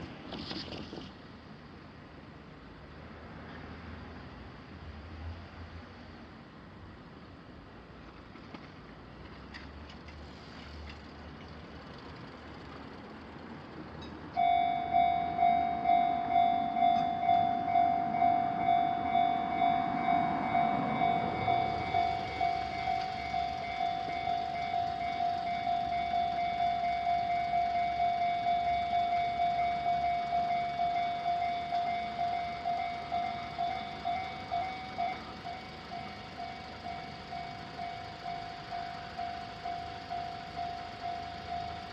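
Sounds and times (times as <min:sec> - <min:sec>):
faint traffic hum: 0:00.0 - 0:41.9
level crossing electronic bell: 0:14.4 - 0:41.9
vehicle passing by: 0:15.2 - 0:25.2.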